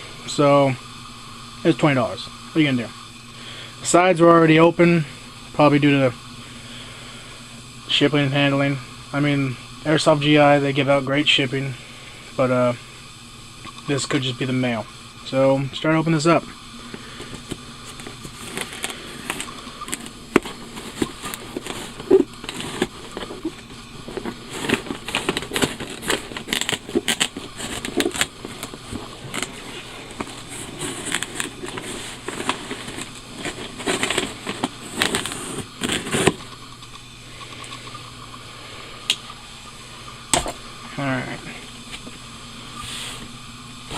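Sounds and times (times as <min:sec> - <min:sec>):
cardboard box crackling and rustling: 0:17.2 - 0:36.6.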